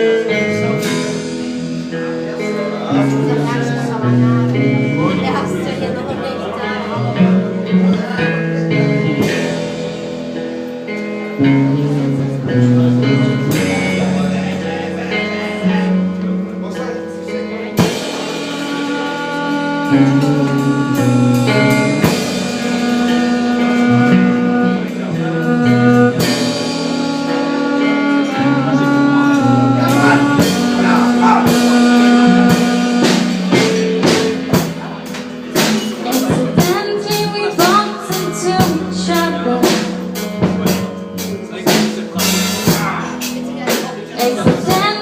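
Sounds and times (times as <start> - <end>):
held guitar notes: 0.0 - 45.0
rock band playing: 0.0 - 45.0
rapid drum hits: 29.2 - 36.8.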